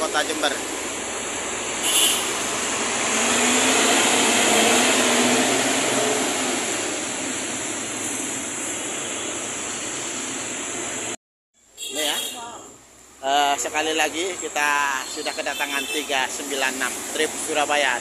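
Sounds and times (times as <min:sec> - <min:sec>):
bus engine accelerating: 0:00.0 - 0:11.2.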